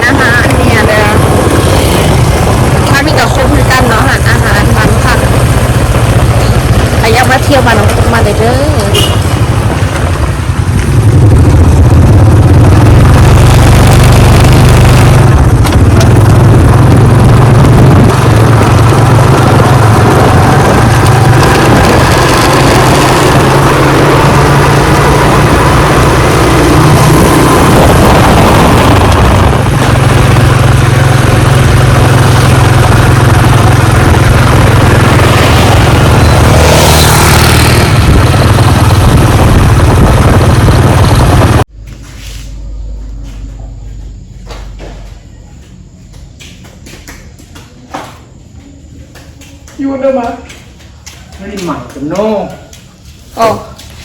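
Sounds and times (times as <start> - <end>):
engine and road rumble: 0.0 - 54.0.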